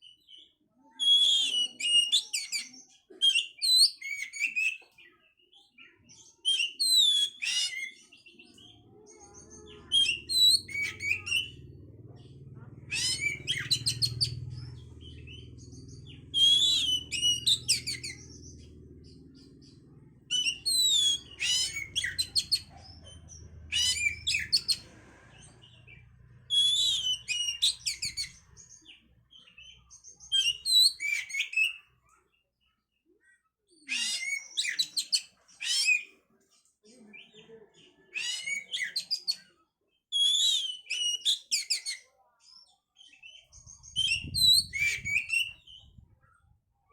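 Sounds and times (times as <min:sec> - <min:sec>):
songbird whistling and chattering: 0:01.0 - 0:04.9, 0:05.8 - 0:08.7, 0:09.3 - 0:11.7, 0:12.9 - 0:31.9, 0:33.9 - 0:36.1, 0:38.1 - 0:39.5, 0:40.2 - 0:42.0, 0:43.2 - 0:46.0
low hum: 0:11.4 - 0:21.4.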